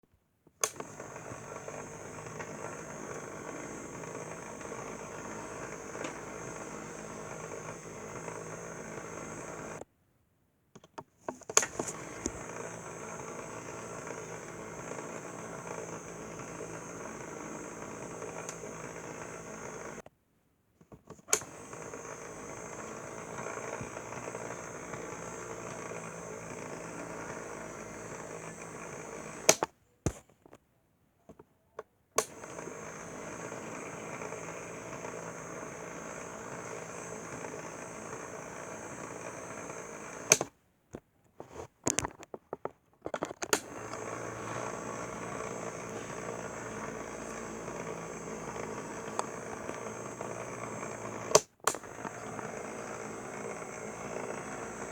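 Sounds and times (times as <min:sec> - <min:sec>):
sharp click: 0:00.6 - 0:00.9, 0:29.4 - 0:30.3, 0:32.2 - 0:32.5, 0:40.3 - 0:40.5, 0:51.3 - 0:51.9
small electric motor whirring: 0:00.6 - 0:09.8, 0:11.6 - 0:20.0, 0:21.3 - 0:29.7, 0:32.2 - 0:40.5, 0:43.4 - 0:54.9.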